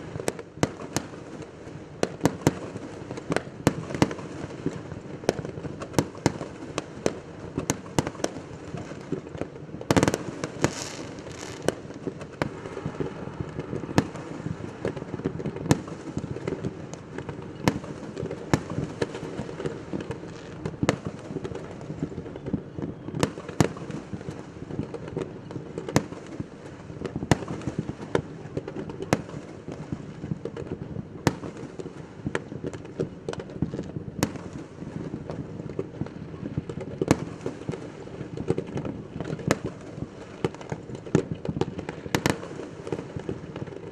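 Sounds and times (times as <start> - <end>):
fireworks bangs and cracks: 0.0 - 43.9
rumble of distant explosions: 10.5 - 17.8.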